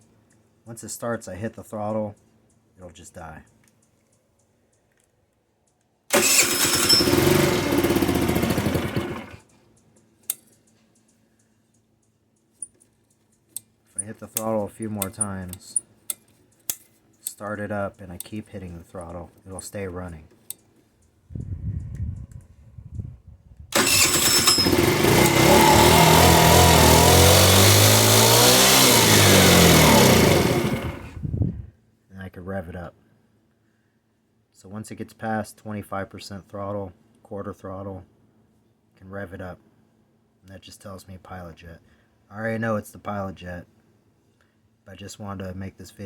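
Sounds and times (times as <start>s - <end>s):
scooter engine starting and stalling: 6.1s - 9.5s, 23.7s - 31.2s.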